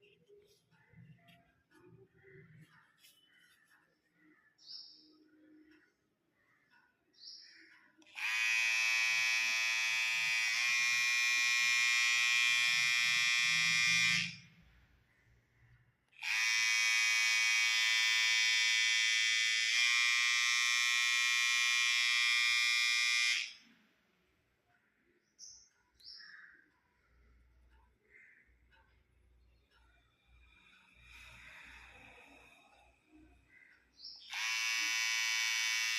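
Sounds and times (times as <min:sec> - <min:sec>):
electric hair trimmer buzzing: 0:08.1 - 0:14.5, 0:16.2 - 0:23.7, 0:34.3 - 0:35.9.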